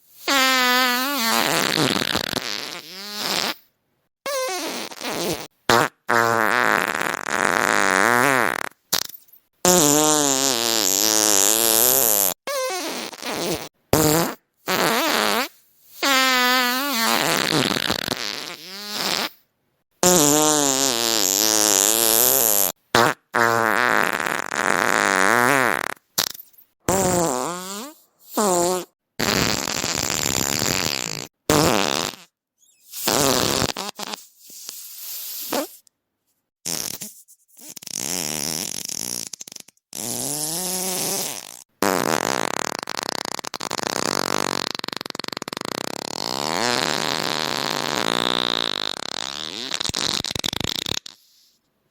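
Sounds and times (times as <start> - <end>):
fart sounds: 0.2 - 3.7, 4.3 - 19.4, 20.0 - 35.8, 36.6 - 51.6.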